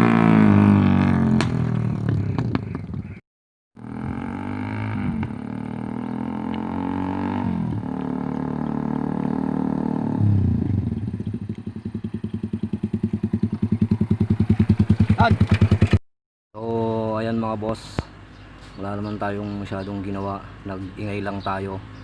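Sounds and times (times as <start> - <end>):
motorcycle engine revving and idling: 0.0 - 3.2, 3.8 - 16.0.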